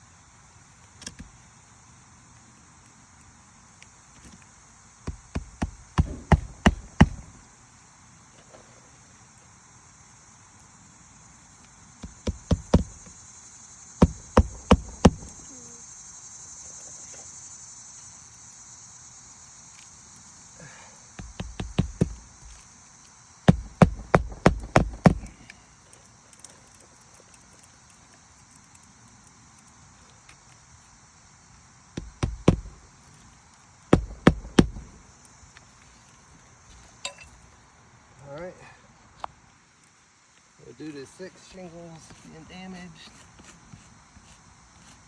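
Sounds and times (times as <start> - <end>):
insects buzzing: 0.0 - 45.0
hammer blows on nails: 5.0 - 7.4, 12.0 - 13.2, 14.0 - 15.5, 20.6 - 22.6, 23.4 - 25.6, 32.0 - 32.8, 34.0 - 35.1.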